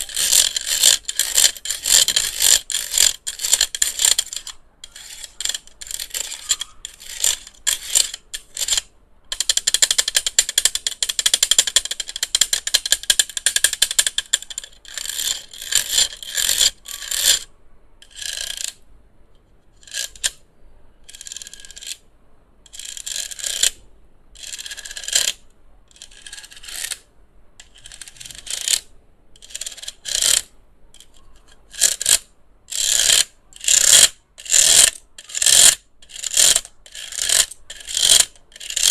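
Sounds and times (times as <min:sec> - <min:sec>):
handheld electric fan whirring: 0:00.0 - 0:17.4, 0:32.8 - 0:38.9.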